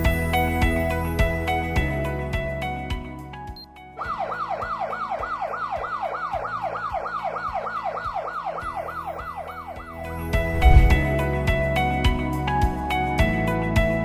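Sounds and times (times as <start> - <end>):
background music: 0.0 - 14.0
whooping alarm siren: 4.1 - 9.9.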